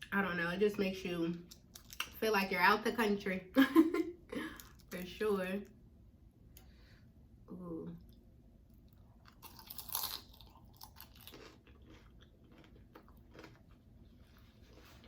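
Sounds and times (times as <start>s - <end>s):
crunching while chewing: 8.8s - 15.0s
crunchy taco shell bite: 9.2s - 13.9s.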